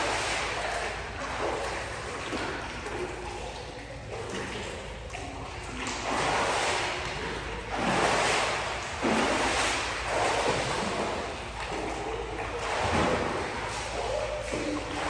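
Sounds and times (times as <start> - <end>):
pool water splashing and churning: 0.0 - 15.0.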